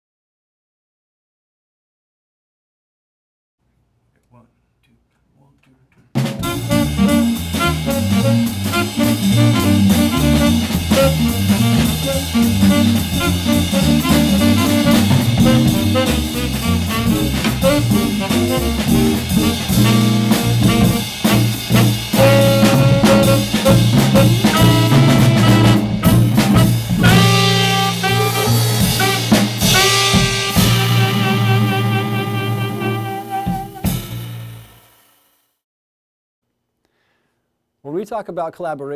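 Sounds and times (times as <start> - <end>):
drum kit: 6.1 - 35.1
jazz ensemble playing swing: 6.2 - 34.7
horns: 6.2 - 34.8
stepping bass line: 6.4 - 34.2.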